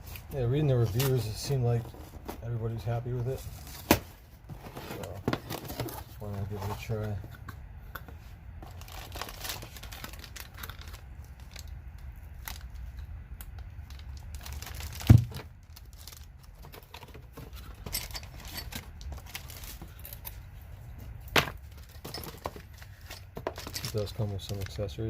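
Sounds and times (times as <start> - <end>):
paper and plastic tearing: 8.6 - 11.6, 14.0 - 17.1.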